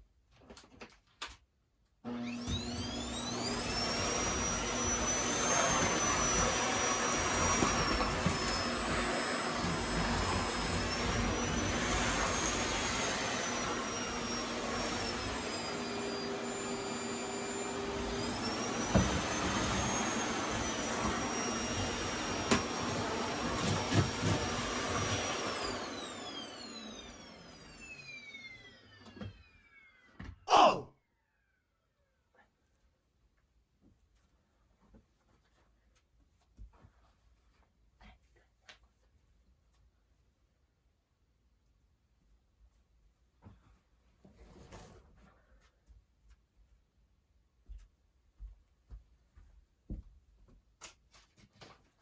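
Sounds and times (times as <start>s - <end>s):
vacuum cleaner motor whine: 2.0s - 30.4s.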